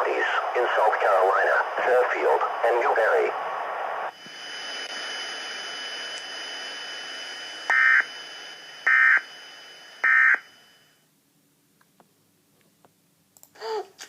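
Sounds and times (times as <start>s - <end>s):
thin high whine: 0.0s - 11.1s.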